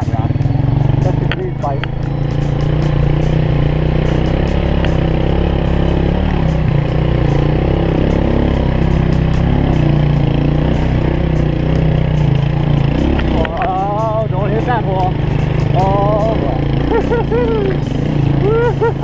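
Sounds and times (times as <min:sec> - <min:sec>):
motorcycle engine running: 0:00.0 - 0:19.0.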